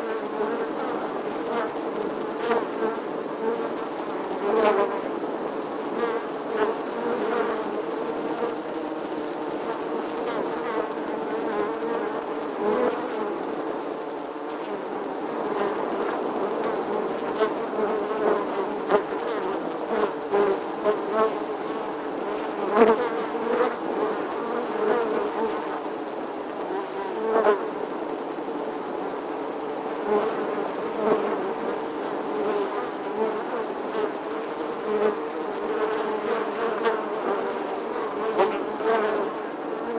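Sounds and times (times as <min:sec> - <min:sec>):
bee buzzing: 0:00.0 - 0:25.9, 0:26.6 - 0:27.8, 0:29.9 - 0:39.9.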